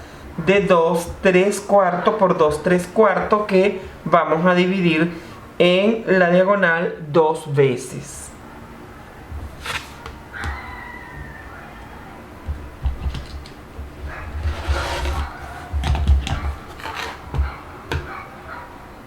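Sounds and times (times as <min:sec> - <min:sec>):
rasping fabric cut: 0:09.6 - 0:10.1, 0:14.5 - 0:15.4.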